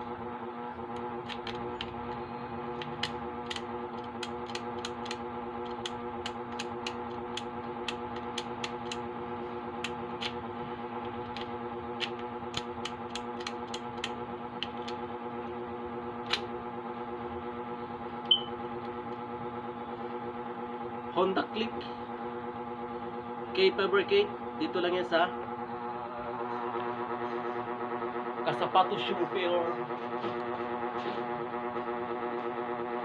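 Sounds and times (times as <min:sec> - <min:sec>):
key-cutting machine motor humming: 0:00.0 - 0:20.2
sharp clicks: 0:02.8 - 0:09.0.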